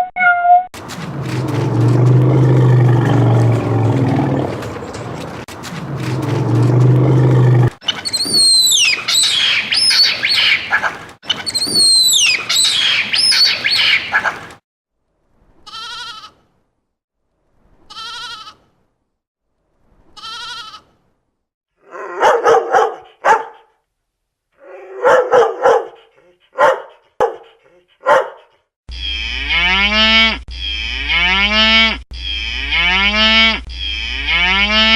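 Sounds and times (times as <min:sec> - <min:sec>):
high whistled animal calls: 0:07.8 - 0:14.3
dog barking: 0:21.9 - 0:23.8, 0:24.6 - 0:28.6.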